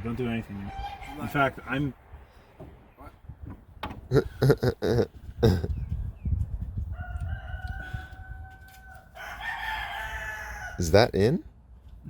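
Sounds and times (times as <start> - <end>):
rooster crowing: 6.9 - 10.8.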